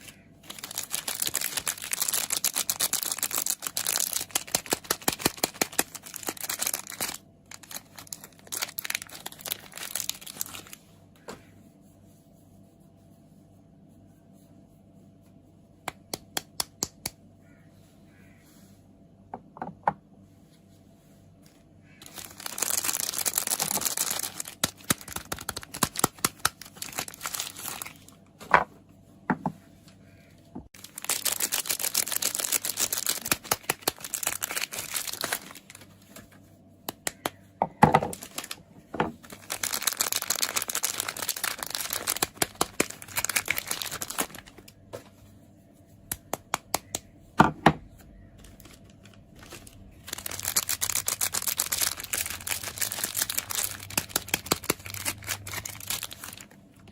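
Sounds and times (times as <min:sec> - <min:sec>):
packaging crinkling and tearing: 0:00.0 - 0:10.8, 0:22.0 - 0:28.2, 0:30.7 - 0:37.4, 0:38.1 - 0:44.9, 0:48.1 - 0:56.9.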